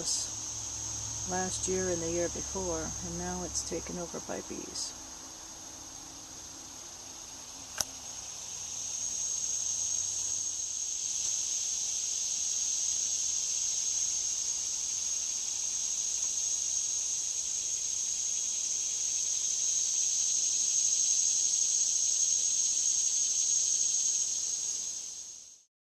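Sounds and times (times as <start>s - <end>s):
insect drone: 0.0s - 25.7s
sharp click: 7.7s - 8.0s.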